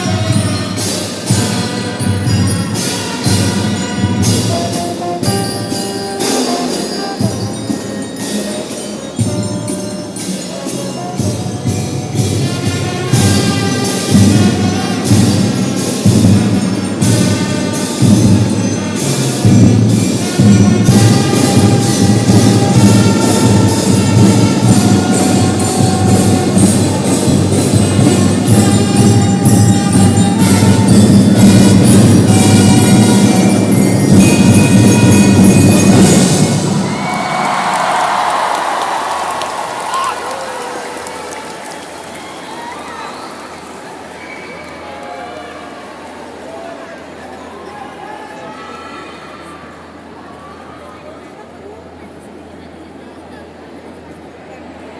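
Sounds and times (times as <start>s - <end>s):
marching drum band playing: 0.0s - 38.8s.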